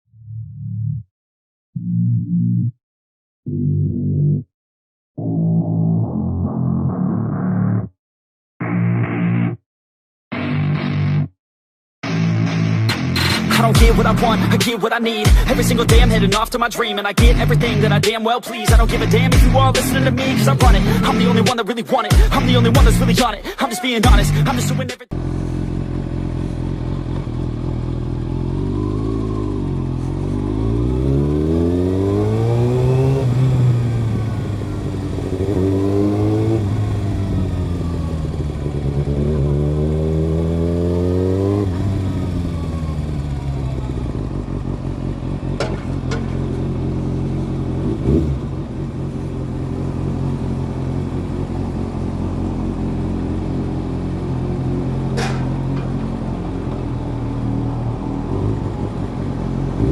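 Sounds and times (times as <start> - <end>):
motorcycle engine revving: 18.8 - 21.5, 24.1 - 59.9.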